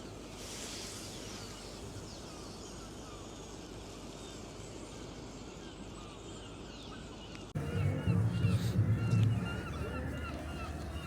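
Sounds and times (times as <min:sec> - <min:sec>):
small birds chirping: 0:00.9 - 0:11.0
distant traffic hum: 0:07.6 - 0:11.0.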